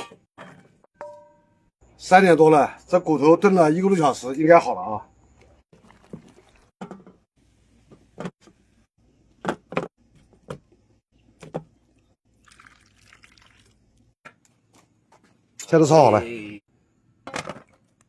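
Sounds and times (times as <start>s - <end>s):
pot and utensils clinking: 0.0s - 1.4s
liquid splashing: 5.7s - 6.7s, 12.3s - 14.1s.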